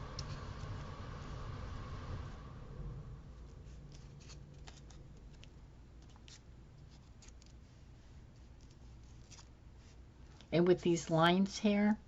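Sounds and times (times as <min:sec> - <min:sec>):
low room hum: 0:00.0 - 0:12.0
paper ticks and rustles: 0:03.8 - 0:07.6, 0:08.3 - 0:09.5.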